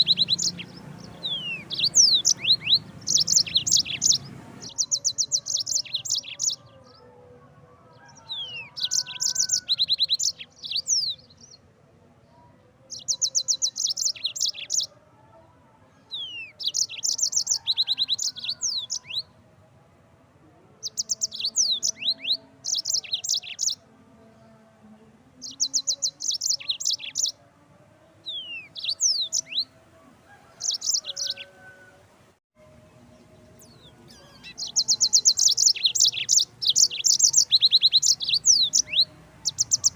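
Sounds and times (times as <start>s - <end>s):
canary singing trilled notes: 0.0s - 6.8s, 8.2s - 11.7s, 12.9s - 14.9s, 20.8s - 23.8s, 33.3s - 39.9s.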